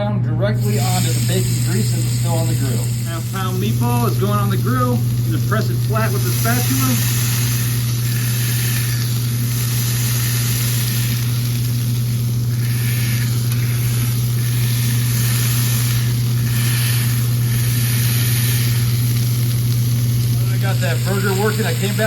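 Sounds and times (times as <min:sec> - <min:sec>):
steady low hum: 0:00.0 - 0:22.0
meat sizzling on a griddle: 0:00.6 - 0:22.0.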